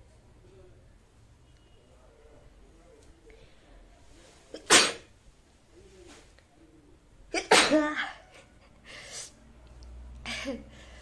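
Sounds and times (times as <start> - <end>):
quiet breath: 3.2 - 4.5, 8.7 - 9.5, 10.3 - 11.0.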